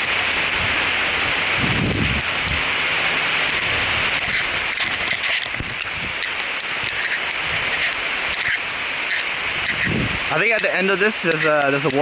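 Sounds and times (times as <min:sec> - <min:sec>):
steady rain falling: 0:00.0 - 0:12.0.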